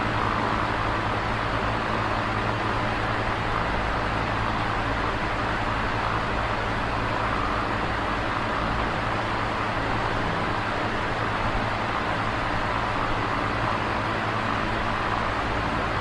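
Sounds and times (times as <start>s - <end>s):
electric fan whirring: 0.0s - 16.0s.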